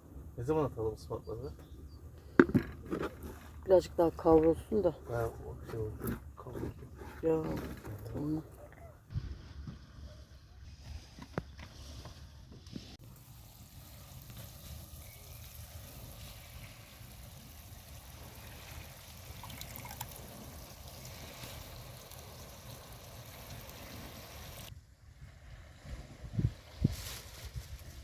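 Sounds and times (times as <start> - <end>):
food sizzling in a hot pan: 13.0 - 24.7.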